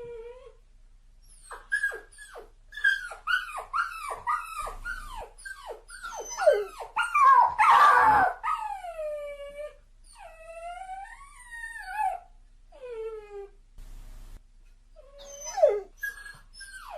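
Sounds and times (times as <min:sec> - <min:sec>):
dog whimpering: 0:01.3 - 0:13.6, 0:15.0 - 0:16.9
dog whining: 0:01.3 - 0:13.6, 0:15.0 - 0:16.9
dog yelp: 0:01.4 - 0:08.8.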